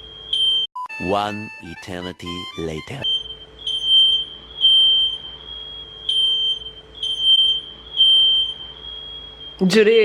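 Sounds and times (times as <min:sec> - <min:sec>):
smoke alarm beeps: 0:00.0 - 0:00.9, 0:03.0 - 0:09.8
smoke alarm tone: 0:00.0 - 0:01.1, 0:02.3 - 0:09.8.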